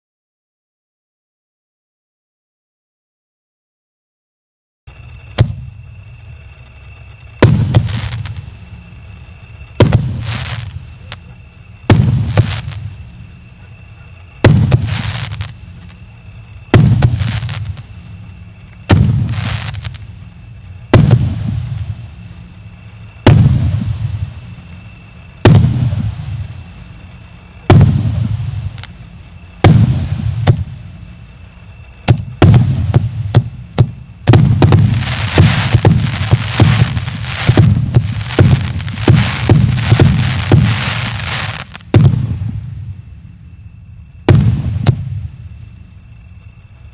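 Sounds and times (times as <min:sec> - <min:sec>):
crackling firework pops: 0:05.2 - 0:08.8, 0:09.7 - 0:13.2, 0:13.8 - 0:16.1, 0:16.7 - 0:22.2, 0:23.2 - 0:24.6, 0:25.2 - 0:26.8, 0:27.6 - 0:30.9, 0:31.8 - 0:43.0, 0:44.2 - 0:45.5
firework booms: 0:05.3 - 0:06.4, 0:07.1 - 0:09.0, 0:09.6 - 0:43.2, 0:44.2 - 0:45.8.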